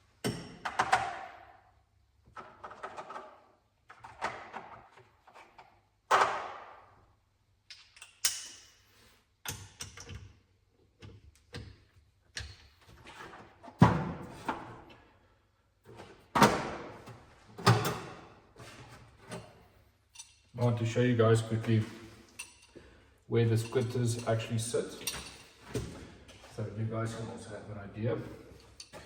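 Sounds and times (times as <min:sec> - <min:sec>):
metal tools knocking and clunking: 0:23.5 - 0:26.4.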